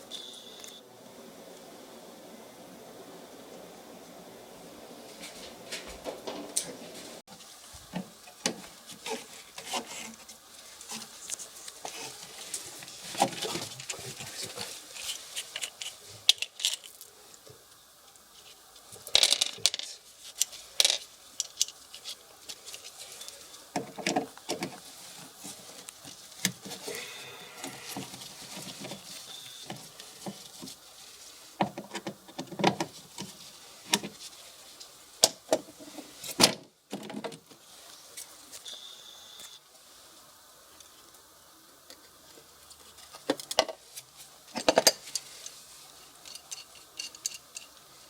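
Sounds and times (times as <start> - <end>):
hard objects clinking and rattling: 19.1 - 22.0, 46.2 - 47.9.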